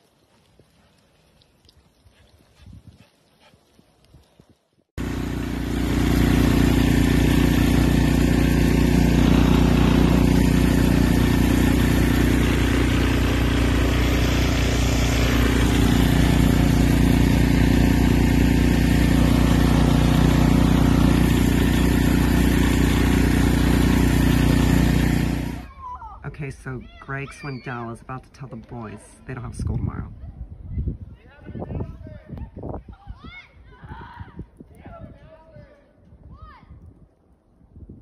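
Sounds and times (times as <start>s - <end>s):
engine running: 5.0s - 25.7s.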